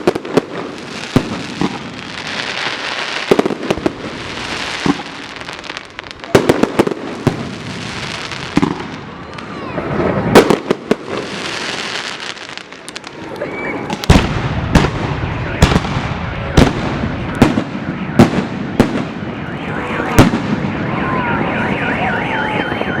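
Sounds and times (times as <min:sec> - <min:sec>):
firework bangs: 0:00.0 - 0:21.4
car alarm wailing: 0:15.2 - 0:23.0.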